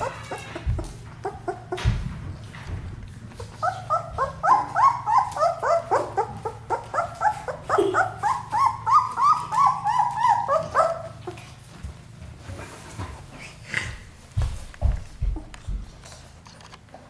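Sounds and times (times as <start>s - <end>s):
puppies whining and squealing: 0.0s - 12.5s.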